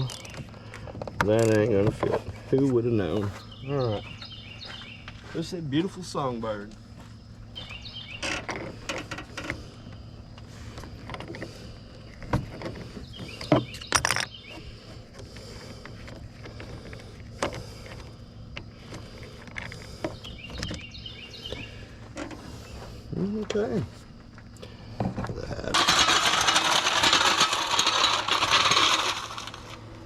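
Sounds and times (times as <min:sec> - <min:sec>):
songbird chirping: 0:00.0 - 0:08.8, 0:09.5 - 0:24.8
steady low hum: 0:00.0 - 0:30.0
metal tools clinking and knocking: 0:13.4 - 0:14.4.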